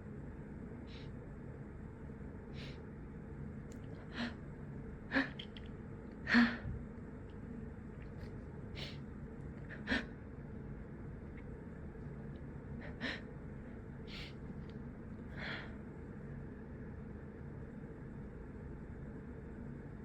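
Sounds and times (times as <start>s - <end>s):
person gasping breaths: 4.0s - 4.4s, 6.3s - 6.8s, 12.8s - 13.3s, 15.3s - 15.8s.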